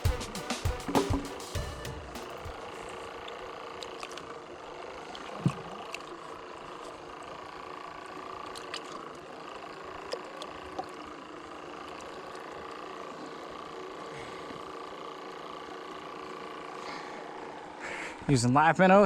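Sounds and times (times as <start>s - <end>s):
sharp knock: 0.0s - 2.6s
distant motorboat engine droning: 0.0s - 18.5s.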